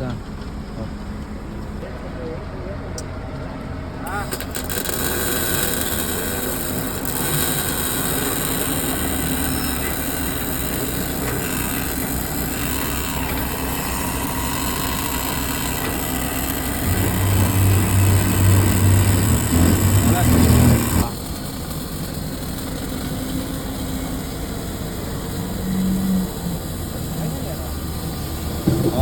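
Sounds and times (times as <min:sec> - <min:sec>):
excavator diesel engine running: 0:06.2 - 0:29.0.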